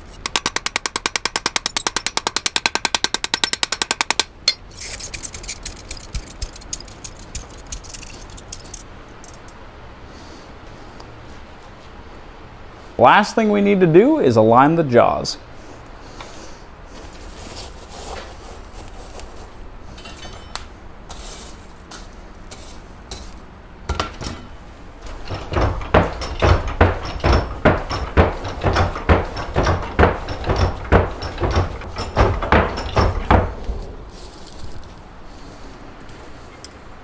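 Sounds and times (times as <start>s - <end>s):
metal tongs clattering: 4.5s - 9.5s
hammer blows on anvil: 25.2s - 33.7s.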